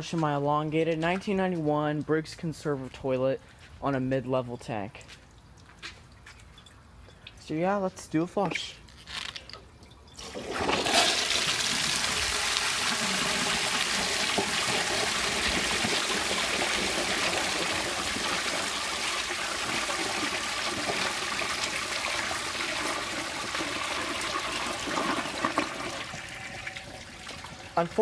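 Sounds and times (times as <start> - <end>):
toilet flushing: 10.2 - 28.0.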